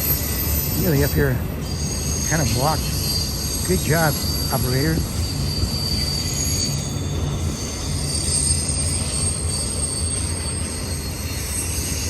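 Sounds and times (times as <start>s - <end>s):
high wheel squeal: 0.0s - 12.0s
train wheels rumbling on rail: 0.0s - 12.0s.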